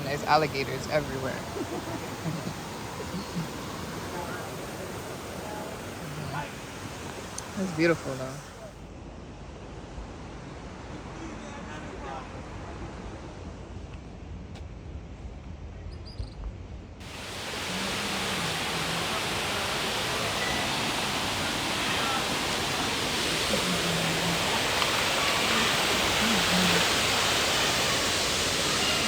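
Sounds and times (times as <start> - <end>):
faint voices: 0.0 - 8.8, 17.1 - 29.0
waterfall rushing: 0.0 - 8.8, 17.0 - 29.0.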